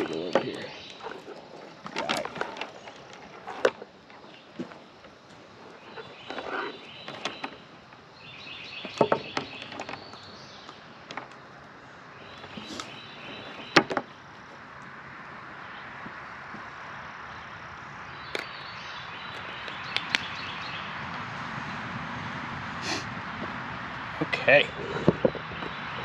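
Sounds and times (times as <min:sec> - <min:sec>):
gear knocking and rustling: 0:00.0 - 0:07.6
steady outdoor hiss: 0:00.0 - 0:26.0.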